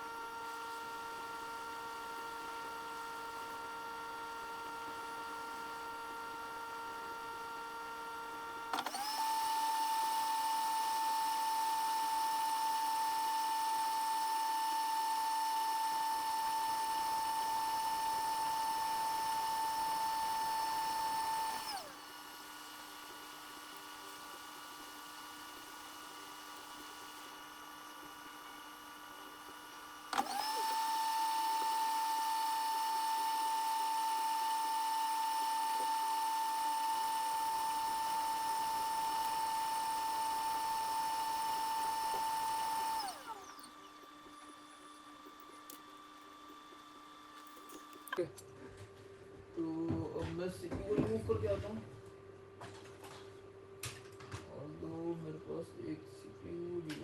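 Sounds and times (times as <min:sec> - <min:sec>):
hot air blower whining: 0:08.7 - 0:29.5, 0:30.1 - 0:43.7.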